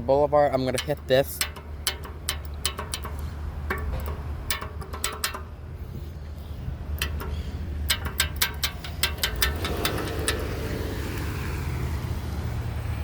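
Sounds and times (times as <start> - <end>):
crosswalk signal clicking: 0.5 - 5.7, 6.8 - 11.5.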